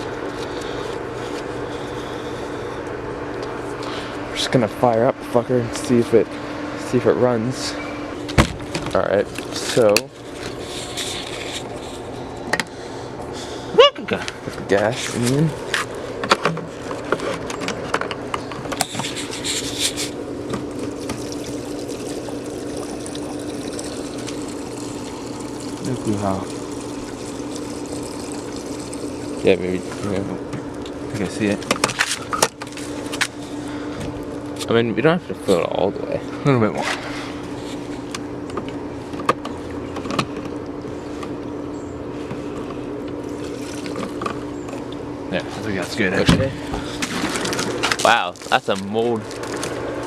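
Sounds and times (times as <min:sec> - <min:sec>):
fuel trickling into a tank: 0:00.0 - 0:03.0, 0:18.7 - 0:34.6, 0:39.4 - 0:45.0, 0:45.6 - 0:49.9
steady low hum: 0:00.0 - 0:50.0.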